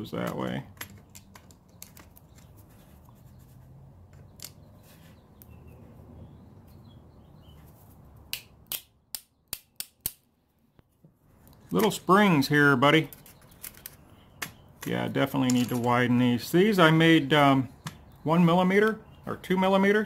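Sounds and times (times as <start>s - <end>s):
metal lock pins rubbing: 0.2s - 3.0s, 13.1s - 14.0s.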